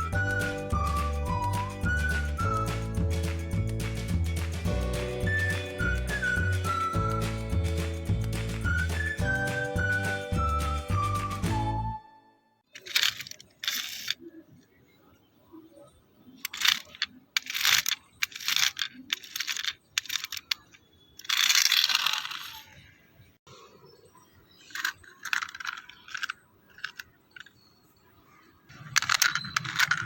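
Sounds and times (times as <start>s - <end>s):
small hard parts clattering: 12.7s - 14.2s, 16.4s - 22.8s, 24.6s - 27.7s, 28.7s - 30.0s.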